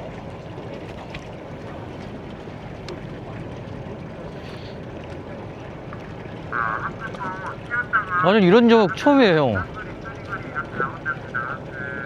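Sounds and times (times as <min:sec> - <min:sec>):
boat engine rumble: 0:00.0 - 0:12.0
water against boat hull: 0:00.0 - 0:12.0.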